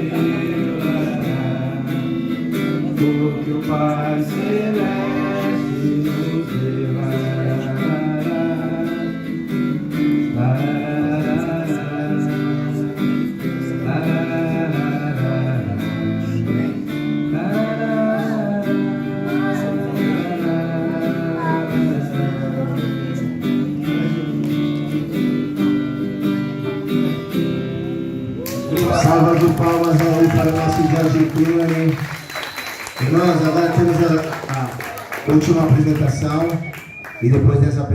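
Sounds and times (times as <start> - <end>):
person singing: 0.0 - 9.5, 10.3 - 25.4
guitar strumming: 0.0 - 36.8.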